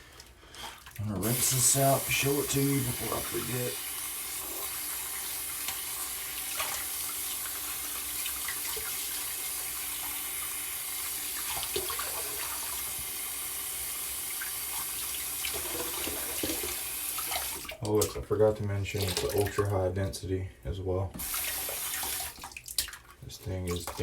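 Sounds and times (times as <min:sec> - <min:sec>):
small water splashes: 0:00.0 - 0:03.8, 0:06.4 - 0:09.2, 0:11.4 - 0:12.8, 0:14.4 - 0:19.7, 0:21.2 - 0:24.0.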